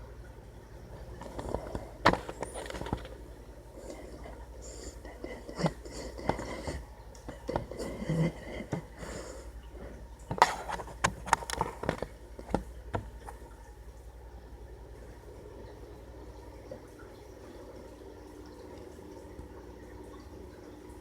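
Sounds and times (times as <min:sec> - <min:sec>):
steady low hum: 0:00.0 - 0:21.0
sharp clicks and knocks: 0:10.3 - 0:13.4.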